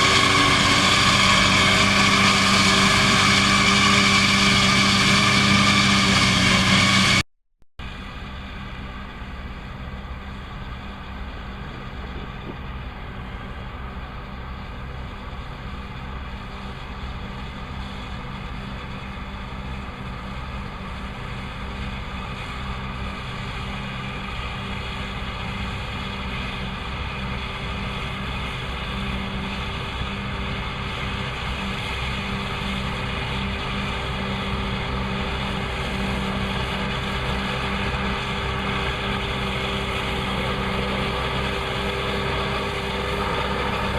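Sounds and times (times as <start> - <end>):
diesel tractor mowing hay: 0.0 - 7.2, 7.8 - 43.9.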